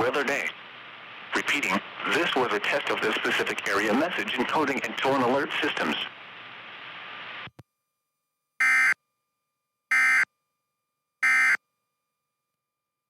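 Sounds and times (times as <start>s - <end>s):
radio background hiss: 0.0s - 7.5s.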